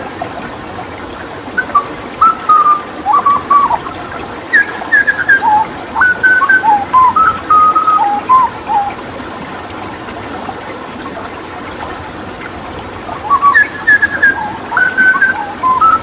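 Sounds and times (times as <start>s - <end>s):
running water: 0.0s - 16.0s
bird singing whistled notes: 1.6s - 3.9s, 4.5s - 9.0s, 13.2s - 16.0s.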